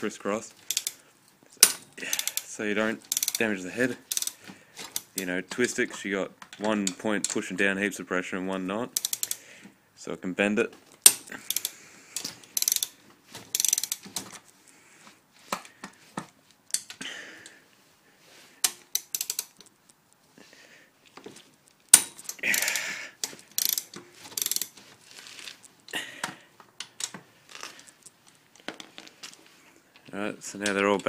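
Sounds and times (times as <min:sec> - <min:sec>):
ratchet wrench clicking: 0:00.6 - 0:01.0, 0:01.6 - 0:06.0, 0:09.0 - 0:09.4, 0:11.0 - 0:14.1, 0:18.6 - 0:19.7, 0:21.9 - 0:24.8.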